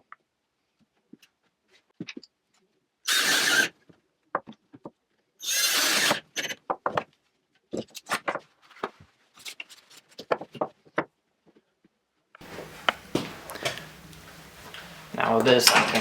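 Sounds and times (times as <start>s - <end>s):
tools and wood knocking: 12.4s - 16.0s.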